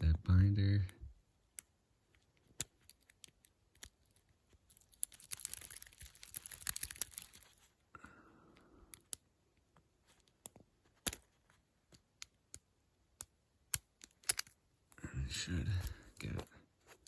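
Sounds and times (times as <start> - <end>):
lock pick clicking and scraping: 13.2 - 14.6.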